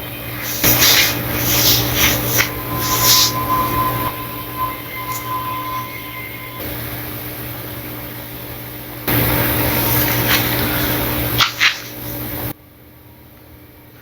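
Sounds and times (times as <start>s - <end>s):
steady hiss: 0.0s - 7.3s.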